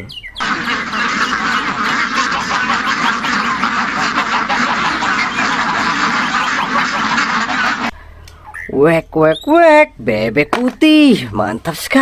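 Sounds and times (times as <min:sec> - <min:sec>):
ducks quacking: 0:00.0 - 0:09.0.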